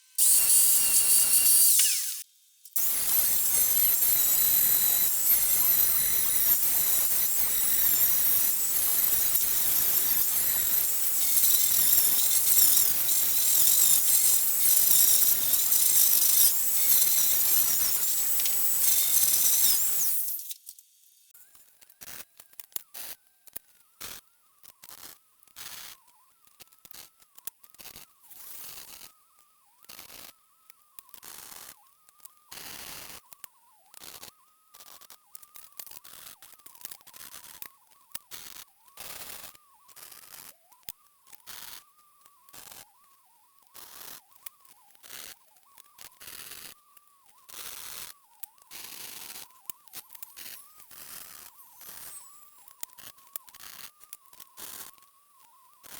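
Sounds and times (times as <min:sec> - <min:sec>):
welder arc crackling hiss: 0:00.2 - 0:20.8.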